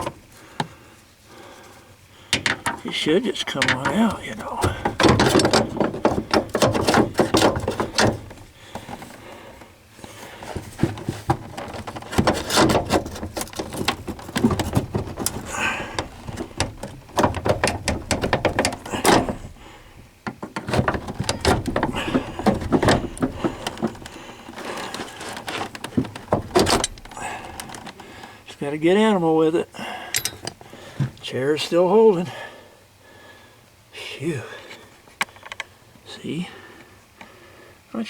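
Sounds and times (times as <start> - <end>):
metal clattering on metal: 2.3 - 9.3, 10.2 - 28.1, 30.2 - 30.6.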